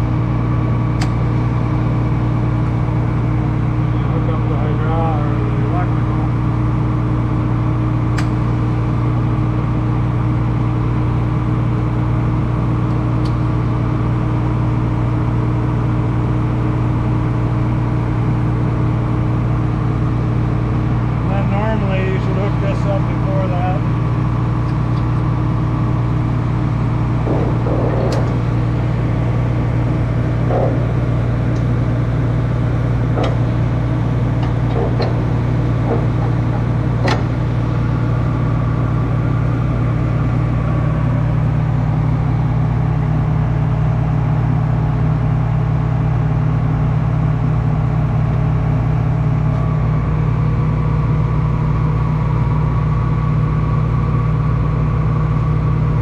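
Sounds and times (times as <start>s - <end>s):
engine idling: 0.0s - 56.0s
sharp clicks and knocks: 27.2s - 28.7s, 30.4s - 31.7s, 33.0s - 37.5s.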